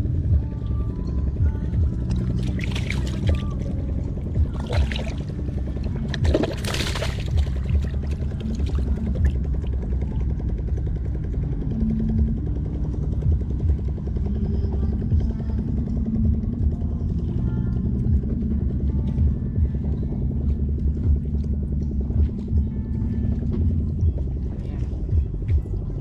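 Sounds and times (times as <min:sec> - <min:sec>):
low engine rumble: 0:00.0 - 0:26.0
water splashing or pouring: 0:02.1 - 0:03.7, 0:04.4 - 0:09.5.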